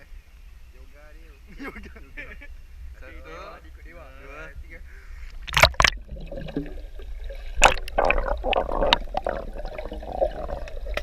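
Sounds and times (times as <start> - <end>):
water splashing and gurgling: 5.4 - 11.0.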